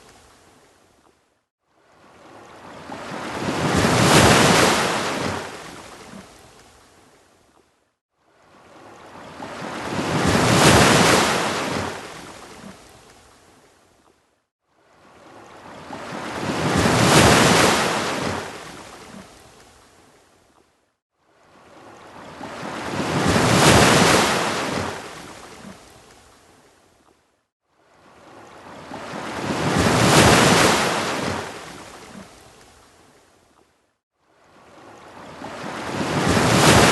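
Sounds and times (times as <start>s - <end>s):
ocean waves washing onto beach: 1.7s - 7.2s, 8.2s - 13.8s, 14.8s - 20.2s, 21.3s - 26.8s, 27.8s - 33.3s, 34.3s - 36.9s.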